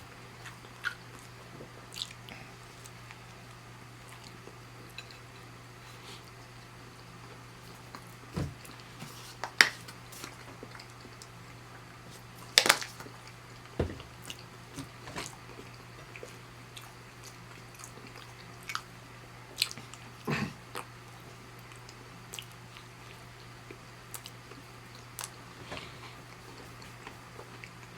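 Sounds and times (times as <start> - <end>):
close chewing and biting: 0.4 - 3.3, 19.5 - 20.1.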